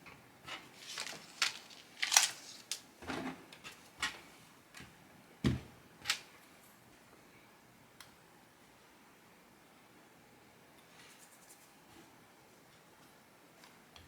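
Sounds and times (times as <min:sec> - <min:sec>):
clicks taps and rustles: 0:00.8 - 0:02.9.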